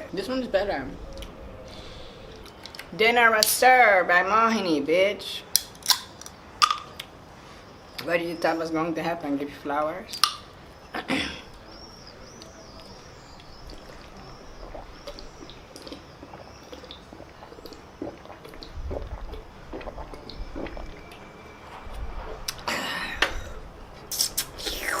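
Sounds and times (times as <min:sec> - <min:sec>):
shells cracking: 0:05.6 - 0:07.1, 0:10.1 - 0:10.5
wet eating clicks and smacks: 0:10.1 - 0:10.5, 0:12.3 - 0:21.3.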